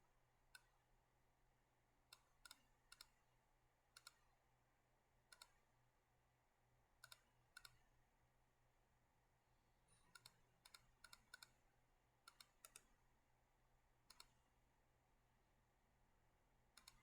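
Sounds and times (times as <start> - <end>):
computer mouse clicks: 2.1 - 3.2, 4.0 - 4.2, 5.3 - 5.6, 7.0 - 7.8, 10.0 - 11.6, 12.3 - 13.0, 14.1 - 14.4, 16.8 - 17.0.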